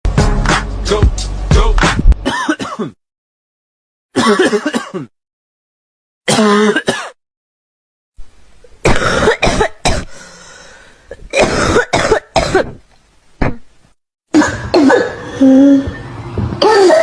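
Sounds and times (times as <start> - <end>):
music: 0.1 - 2.2
person clearing throat: 2.2 - 3.0, 4.2 - 5.1, 6.3 - 7.2, 8.9 - 10.1, 11.2 - 12.8, 14.3 - 15.8
person coughing: 2.2 - 3.0, 4.2 - 5.1, 6.3 - 7.2, 8.9 - 10.2, 11.3 - 12.8, 14.3 - 15.8, 16.6 - 17.0.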